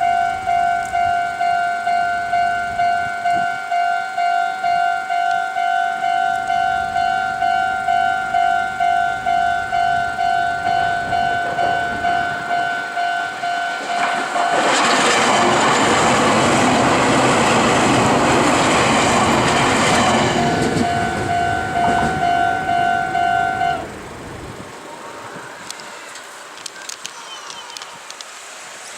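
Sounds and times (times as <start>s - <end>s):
level crossing bell ringing: 0.0s - 14.6s, 19.8s - 24.1s
train wheels rolling on rails: 0.0s - 28.9s.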